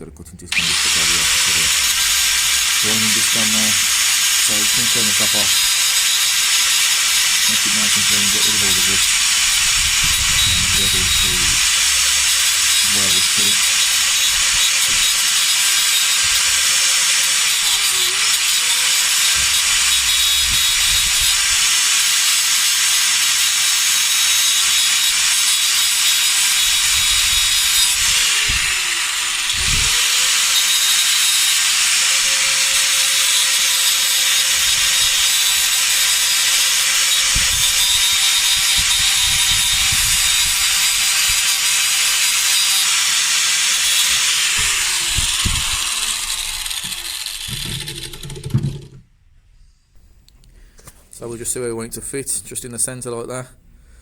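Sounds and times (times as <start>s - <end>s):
angle grinder grinding metal: 0.5s - 49.0s.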